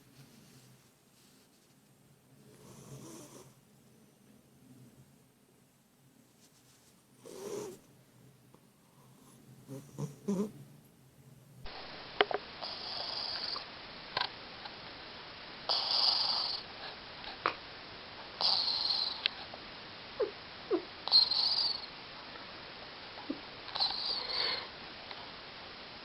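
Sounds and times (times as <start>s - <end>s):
cat snoring: 2.4s - 3.6s, 7.2s - 7.8s, 8.9s - 10.6s, 12.6s - 13.7s, 15.7s - 17.0s, 18.4s - 19.4s, 20.2s - 21.9s, 23.2s - 24.8s.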